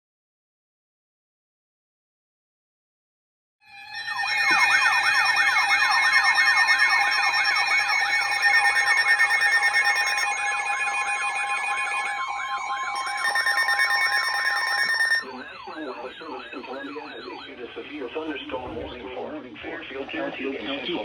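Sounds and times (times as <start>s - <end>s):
siren-like wails: 3.7s - 19.1s
steady alarm tones: 3.7s - 19.6s.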